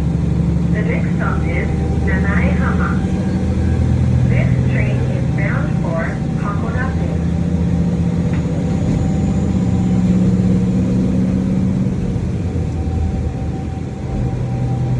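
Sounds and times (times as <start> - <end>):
diesel railcar engine running: 0.0 - 14.9.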